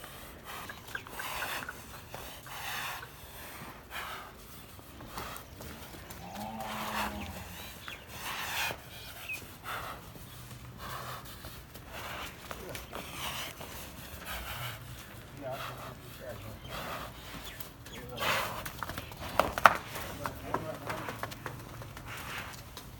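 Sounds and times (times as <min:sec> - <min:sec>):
bull breathing heavily: 0:00.0 - 0:22.9
bull grunting: 0:05.0 - 0:21.3.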